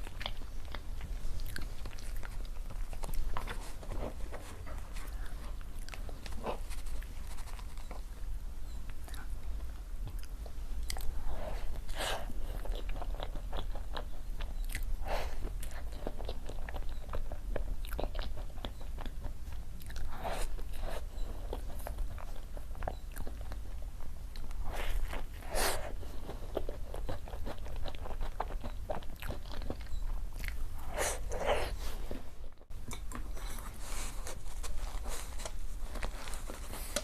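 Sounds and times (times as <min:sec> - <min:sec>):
crunchy chewing: 0:00.0 - 0:37.0
steady low hum: 0:00.0 - 0:37.0.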